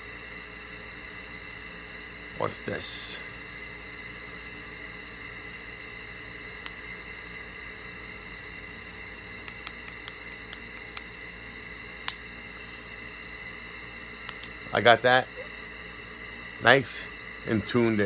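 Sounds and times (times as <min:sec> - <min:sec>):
folding knife clicking: 0:09.5 - 0:11.2, 0:14.0 - 0:14.5.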